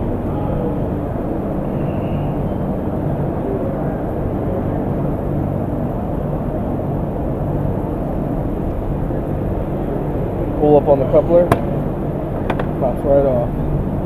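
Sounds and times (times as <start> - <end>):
car engine idling: 10.1 - 14.0.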